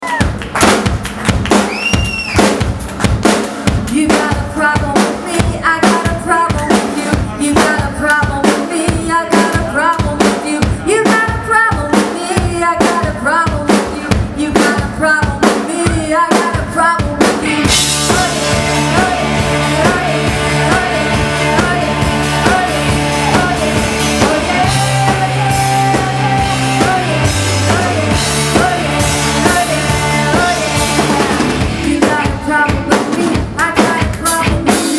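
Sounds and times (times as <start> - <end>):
live rock band playing: 0.0 - 34.9
held bass notes: 17.5 - 32.1.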